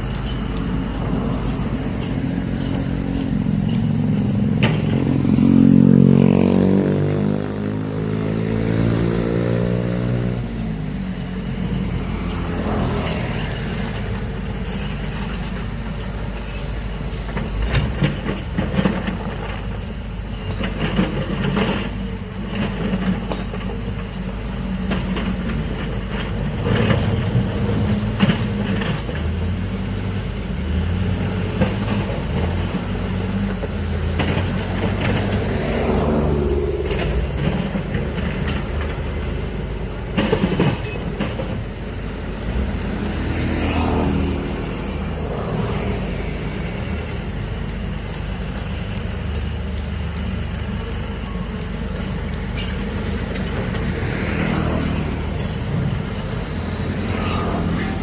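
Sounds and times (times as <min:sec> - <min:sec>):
metal knocks and clanks: 0:00.0 - 0:10.8, 0:31.6 - 0:57.8
excavator diesel engine: 0:00.0 - 0:58.0.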